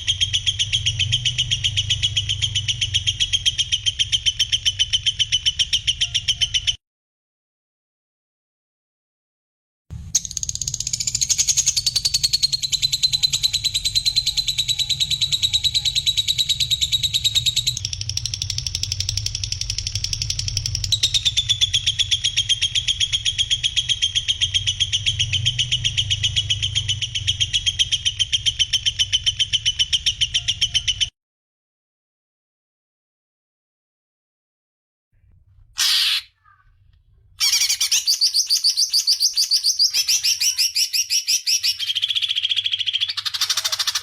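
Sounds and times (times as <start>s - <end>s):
songbird trilling: 0.0s - 6.8s, 10.2s - 31.1s, 35.8s - 36.7s, 37.4s - 44.0s.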